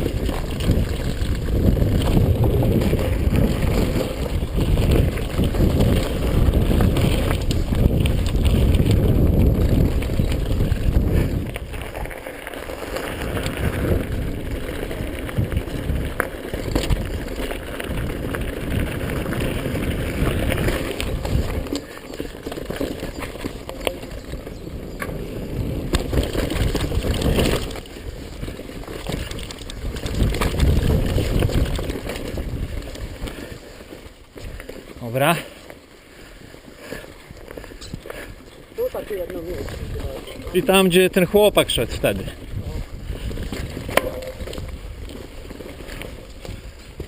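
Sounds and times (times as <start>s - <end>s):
wind on microphone: 0.0s - 12.1s, 13.1s - 22.0s, 23.0s - 33.7s, 41.6s - 47.0s
mountain bike rattle and tyre noise: 0.0s - 47.0s.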